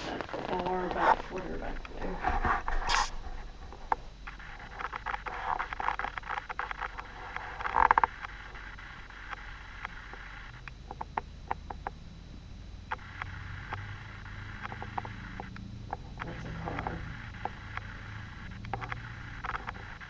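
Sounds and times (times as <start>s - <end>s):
small clicks and taps: 9.8s - 12.0s, 14.6s - 17.9s, 18.6s - 19.9s.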